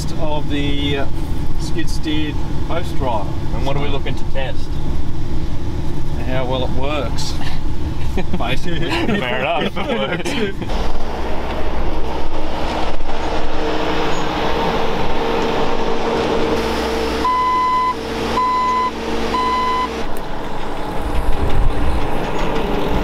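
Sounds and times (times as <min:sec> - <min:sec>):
loader engine running: 0:02.2 - 0:23.0
reversing alarm beeping: 0:16.6 - 0:20.1.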